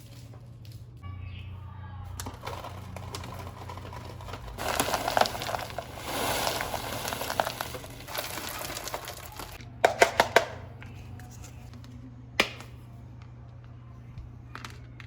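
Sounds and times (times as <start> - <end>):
packaging crinkling: 2.2 - 9.6.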